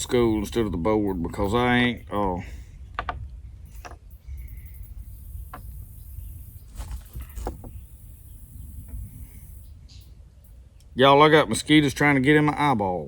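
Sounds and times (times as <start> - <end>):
insects hissing: 3.6 - 10.1.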